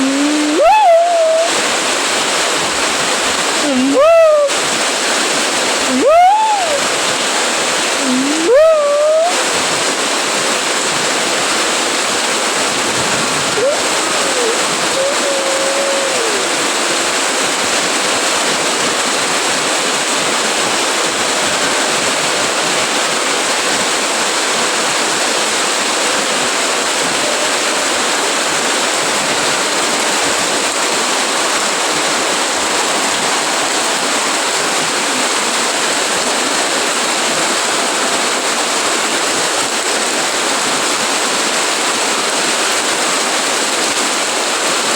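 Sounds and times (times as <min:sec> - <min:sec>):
short rising calls: 0:00.0 - 0:01.6, 0:03.6 - 0:04.6, 0:05.8 - 0:07.0, 0:07.9 - 0:09.5, 0:13.5 - 0:16.9
faint wavering call: 0:00.0 - 0:01.7, 0:03.6 - 0:04.6, 0:05.9 - 0:07.0, 0:08.0 - 0:09.5, 0:13.6 - 0:17.2
heavy rain falling: 0:00.0 - 0:44.9.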